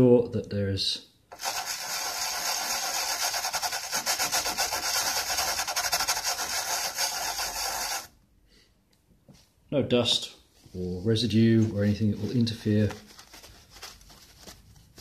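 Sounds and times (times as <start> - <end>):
scrubbing on a circuit board: 1.3 - 8.1.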